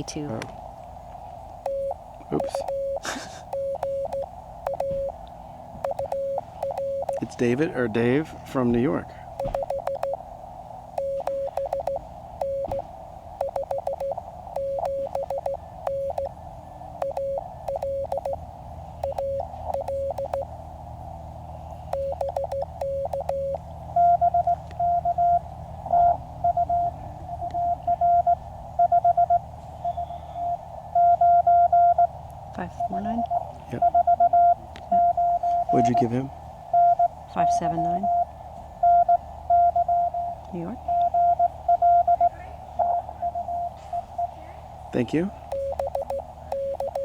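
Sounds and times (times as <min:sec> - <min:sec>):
receiver hiss: 0:00.0 - 0:25.2
high-pitched morse sidetone: 0:01.6 - 0:05.2, 0:05.8 - 0:07.6, 0:09.4 - 0:10.2, 0:11.0 - 0:12.8, 0:13.4 - 0:16.3, 0:17.0 - 0:18.4, 0:19.0 - 0:20.5, 0:21.9 - 0:25.4, 0:35.0 - 0:36.2, 0:45.5 - 0:47.0
low morse code tone: 0:01.6 - 0:05.2, 0:05.8 - 0:10.2, 0:10.9 - 0:16.4, 0:17.0 - 0:18.4, 0:19.0 - 0:20.5, 0:21.9 - 0:44.4, 0:45.0 - 0:47.0
sharp clicks: 0:01.6 - 0:07.4, 0:09.4 - 0:10.2, 0:11.0 - 0:12.8, 0:13.4 - 0:16.3, 0:17.0 - 0:18.4, 0:19.0 - 0:20.5, 0:21.9 - 0:23.6, 0:45.5 - 0:47.0.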